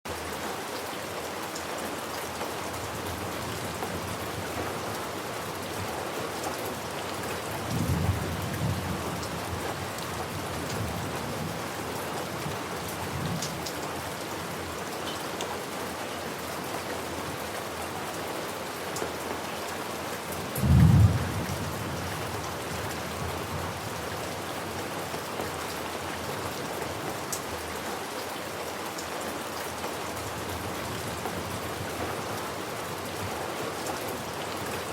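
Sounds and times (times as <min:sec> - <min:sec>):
steady rain falling: 0:00.1 - 0:34.9
thunder rumbling: 0:20.6 - 0:22.4.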